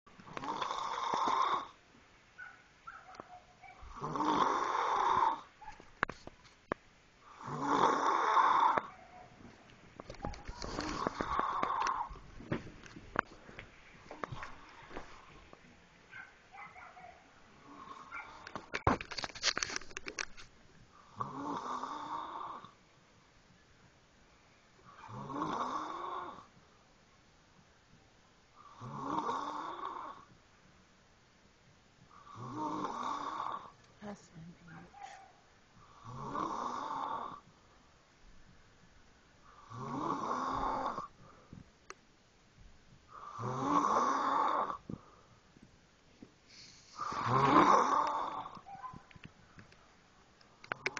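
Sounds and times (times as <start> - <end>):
snoring: 0.2 - 1.8, 3.9 - 5.5, 7.2 - 8.9, 10.5 - 12.2, 17.6 - 18.4, 21.0 - 22.8, 24.8 - 26.5, 28.6 - 30.3, 32.1 - 33.8, 35.8 - 37.4, 39.4 - 41.1, 43.1 - 45.0, 46.5 - 48.6.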